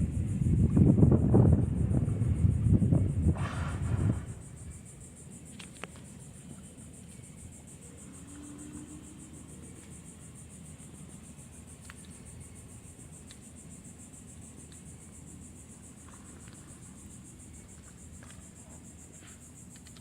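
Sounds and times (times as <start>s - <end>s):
crickets trilling: 0.0s - 20.0s.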